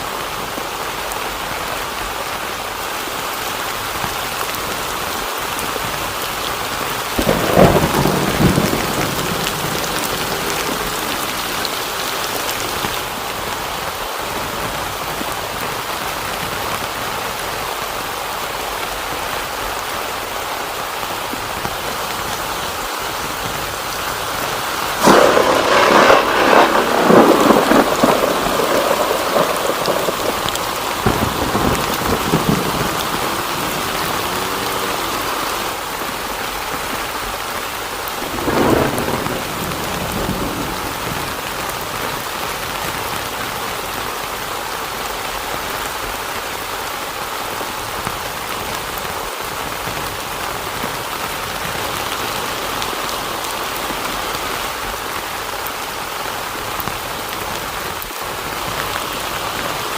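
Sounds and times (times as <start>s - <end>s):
heavy rain falling: 0.0s - 59.9s
thunder rumbling: 5.8s - 13.8s, 24.8s - 44.2s.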